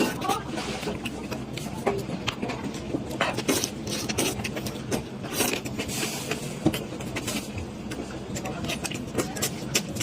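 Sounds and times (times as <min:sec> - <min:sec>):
chewing and crunching food: 0:00.0 - 0:10.0
steady low hum: 0:00.0 - 0:10.0.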